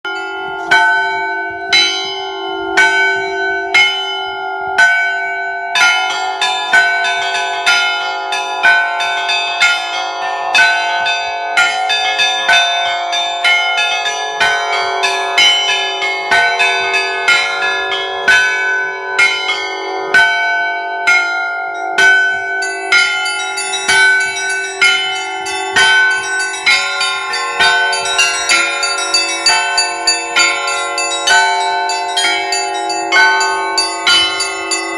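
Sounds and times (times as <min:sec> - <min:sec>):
church bells pealing: 0:00.0 - 0:34.9.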